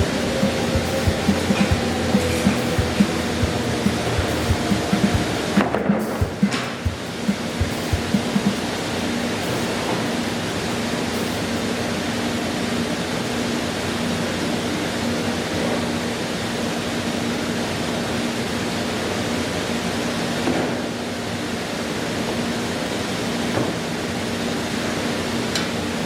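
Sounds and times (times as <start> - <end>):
rushing machine noise: 0.0 - 12.1.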